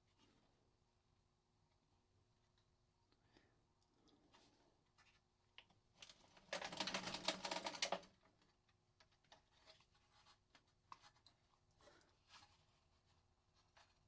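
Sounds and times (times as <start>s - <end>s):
rustling and scraping: 9.3s - 14.0s.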